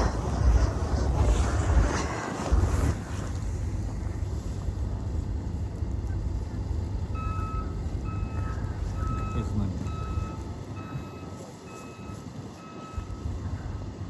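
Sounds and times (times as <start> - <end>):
wind buffeting microphone: 0.0 - 11.4
vehicle reversing alarm beeps: 7.0 - 13.7.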